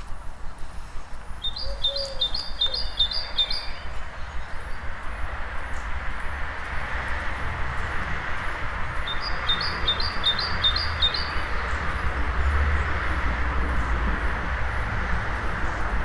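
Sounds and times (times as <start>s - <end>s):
town noise with low rumble: 0.0s - 16.0s
high bird calls: 1.4s - 4.3s, 9.0s - 12.2s.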